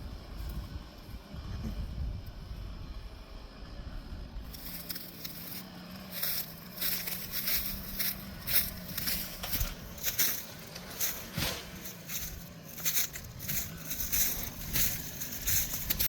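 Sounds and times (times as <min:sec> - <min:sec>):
footsteps crunching dry leaves: 0:04.5 - 0:16.0
twigs crackling underfoot: 0:04.5 - 0:16.0.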